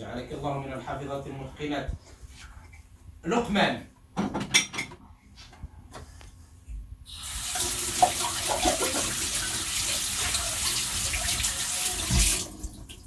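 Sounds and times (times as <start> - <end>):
tap water running into sink: 7.1 - 13.0.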